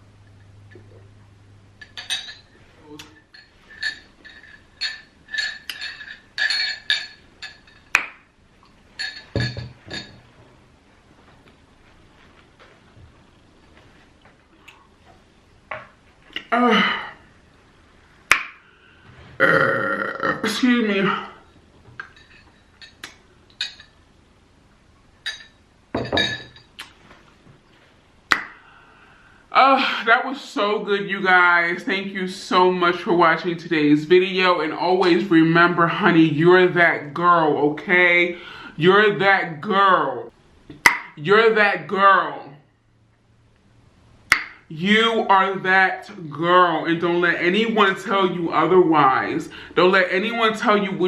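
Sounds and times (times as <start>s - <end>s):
light glass clinks: 1.8s - 2.6s, 3.2s - 8.0s, 9.0s - 10.2s, 22.0s - 24.0s, 25.2s - 26.7s.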